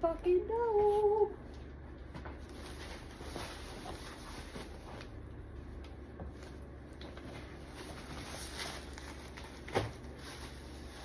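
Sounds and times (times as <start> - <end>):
packaging rustling: 6.4 - 11.0.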